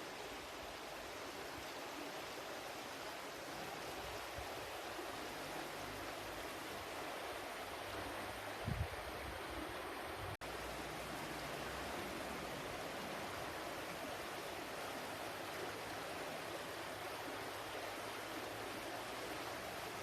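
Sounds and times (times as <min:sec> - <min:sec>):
stream flowing: 0:00.0 - 0:20.0.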